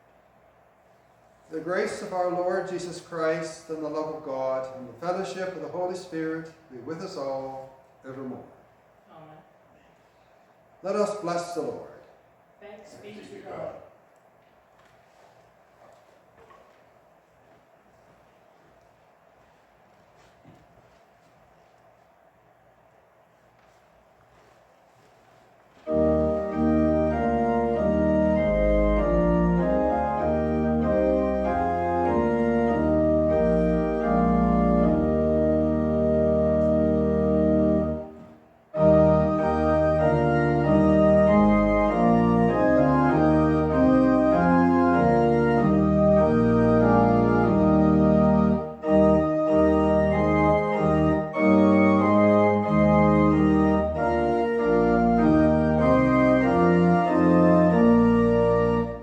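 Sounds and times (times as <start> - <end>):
organ playing sustained chords: 1.5 - 8.5, 25.8 - 59.0.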